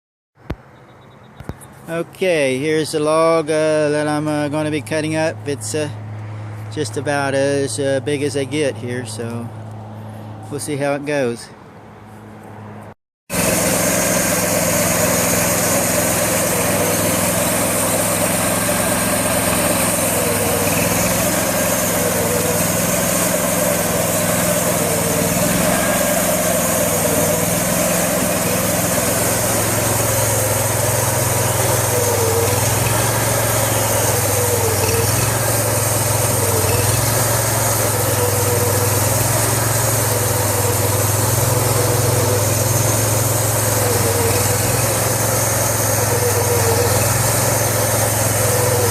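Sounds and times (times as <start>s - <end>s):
band blade sawing log: 13.3s - 48.9s
bandsaw mill engine running: 13.3s - 48.9s.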